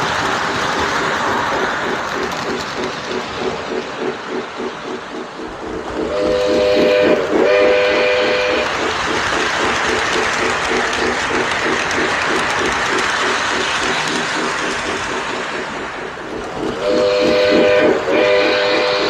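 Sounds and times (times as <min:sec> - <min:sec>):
toy train steam whistle: 0:06.1 - 0:08.8, 0:16.8 - 0:19.0.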